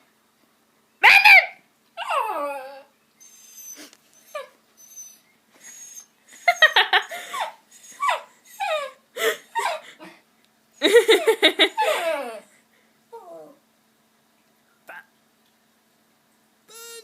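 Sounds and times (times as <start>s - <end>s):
dog whining: 1.0s - 9.9s, 16.7s - 17.0s.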